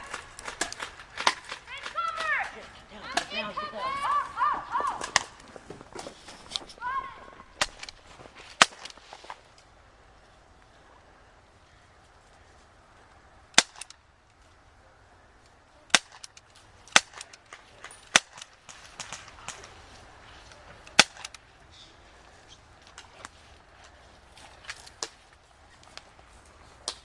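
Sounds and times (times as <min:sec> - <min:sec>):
airsoft guns firing: 0:15.9 - 0:19.7, 0:20.9 - 0:21.4.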